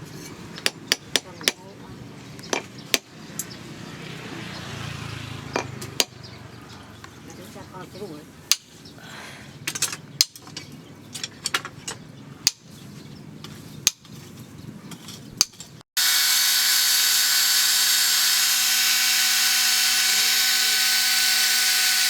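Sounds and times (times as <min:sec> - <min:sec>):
clicks and taps on metal: 0:09.7 - 0:12.6
power tool whining: 0:16.0 - 0:22.0.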